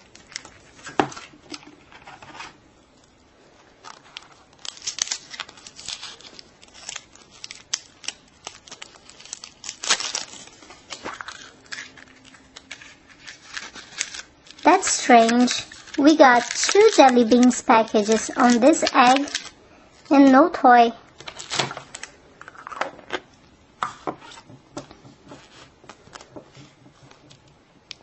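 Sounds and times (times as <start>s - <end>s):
candy packets crinkling: 0.0s - 2.1s, 3.0s - 20.5s, 21.1s - 22.8s.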